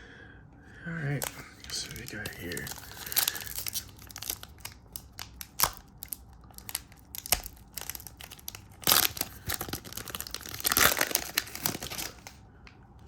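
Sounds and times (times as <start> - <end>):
cards rustling and clicking: 1.1 - 12.4.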